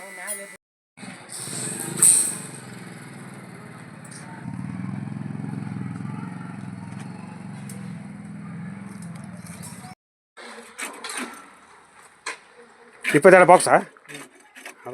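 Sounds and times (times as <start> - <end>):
sharp hissing scrape: 1.0 - 3.1
engine running: 1.0 - 10.0.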